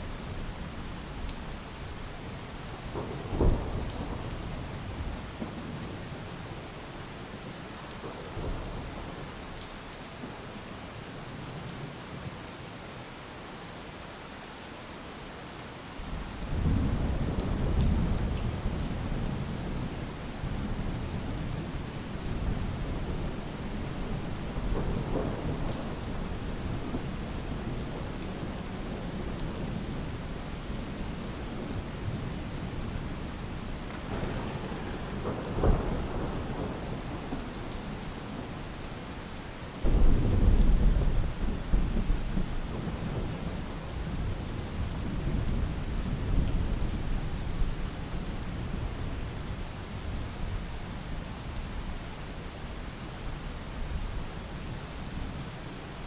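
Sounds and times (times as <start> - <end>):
steady rain falling: 0.0 - 56.0
low thunder rumble: 2.8 - 6.0, 16.2 - 33.0, 33.8 - 38.7, 39.8 - 47.7
thunder crack: 33.9 - 37.5.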